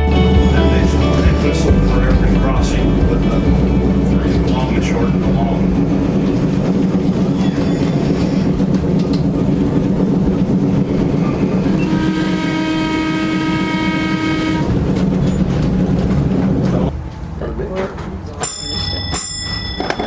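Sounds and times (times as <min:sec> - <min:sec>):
railway car rumbling on track: 0:00.0 - 0:20.0
train whistle blast: 0:11.6 - 0:14.8.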